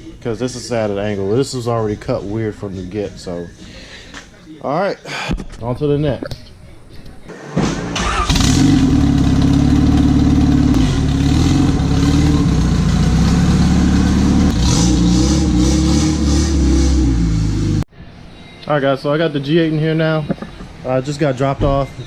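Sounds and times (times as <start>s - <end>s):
car engine starting and running: 7.3s - 17.9s.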